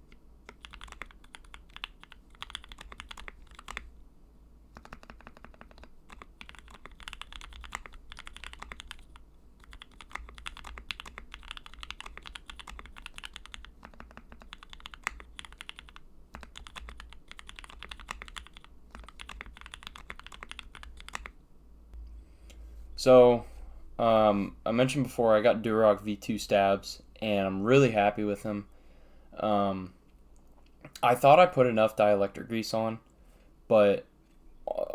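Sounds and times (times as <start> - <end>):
mechanical keyboard typing: 0.1 - 3.9, 4.7 - 21.4.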